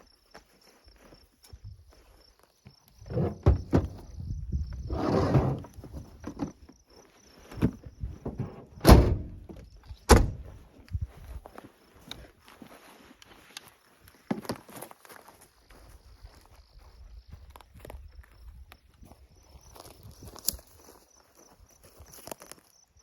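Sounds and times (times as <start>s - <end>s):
insects trilling: 0.0s - 8.8s, 11.5s - 23.0s
rustling and scraping: 3.0s - 6.8s, 7.4s - 9.6s
heavy knocks and thumps: 3.1s - 4.0s.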